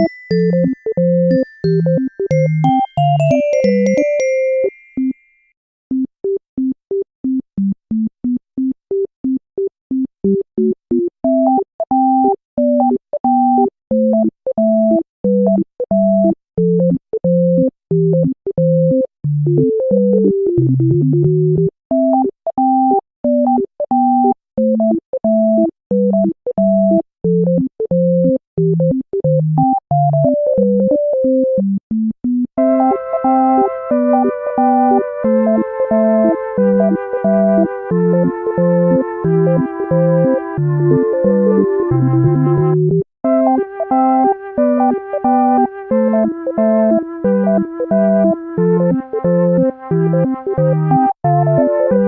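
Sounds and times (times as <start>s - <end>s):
synthesizer keyboard tune: 0.0s - 5.2s, 32.6s - 52.0s.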